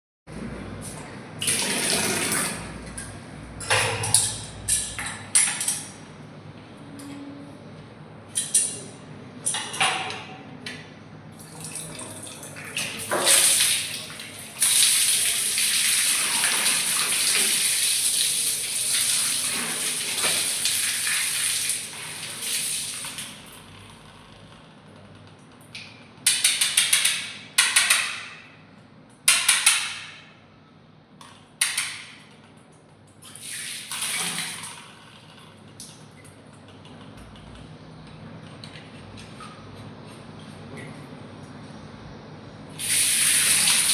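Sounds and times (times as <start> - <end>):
water running from a tap: 11.6 - 23.5, 42.8 - 43.9.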